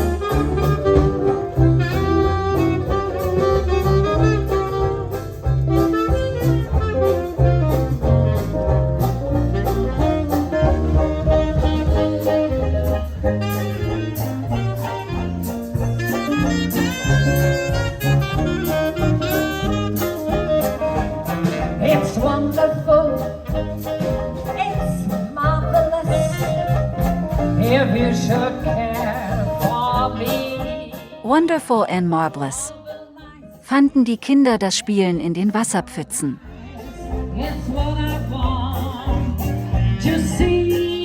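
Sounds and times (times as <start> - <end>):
jazz band playing: 0.0 - 41.0
person singing: 27.4 - 31.3, 35.9 - 41.0.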